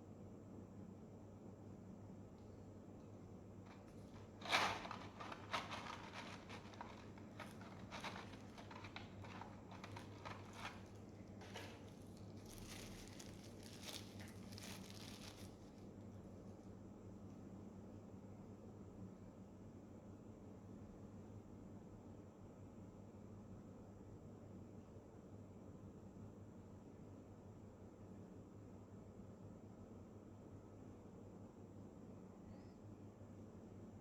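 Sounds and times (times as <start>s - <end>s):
packaging being torn and crinkled: 3.7s - 15.8s.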